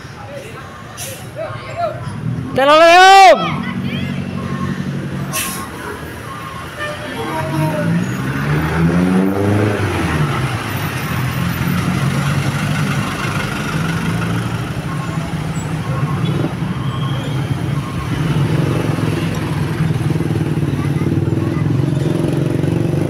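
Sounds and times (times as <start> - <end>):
large vehicle engine revving: 3.4 - 23.0.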